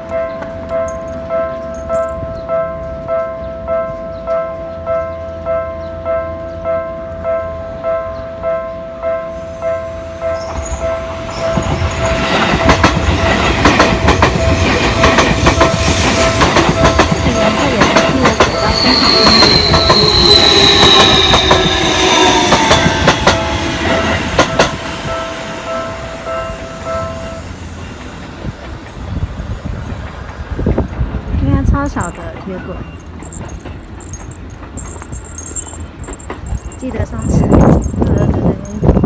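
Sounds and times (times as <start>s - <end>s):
level-crossing warning bell: 0.0s - 28.8s, 30.8s - 39.0s
train wheels clacking: 10.4s - 39.0s.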